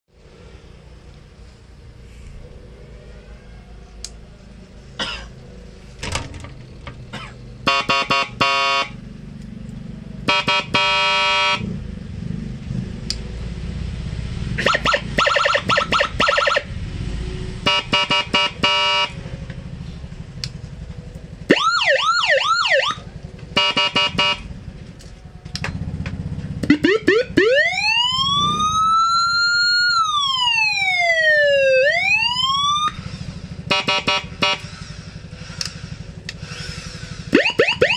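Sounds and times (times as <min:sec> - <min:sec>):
slow wailing siren: 0:02.5 - 0:04.5, 0:14.6 - 0:19.4, 0:21.4 - 0:26.0, 0:26.7 - 0:34.7, 0:37.3 - 0:37.9
fast yelping siren warble: 0:14.6 - 0:16.7, 0:21.5 - 0:23.0, 0:26.7 - 0:33.0, 0:37.3 - 0:37.9
rapid pulsed beeping: 0:26.7 - 0:27.6.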